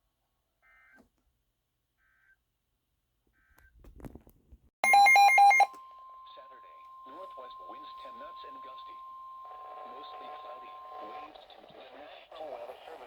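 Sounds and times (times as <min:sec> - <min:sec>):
electronic data tones: 0:04.8 - 0:11.8.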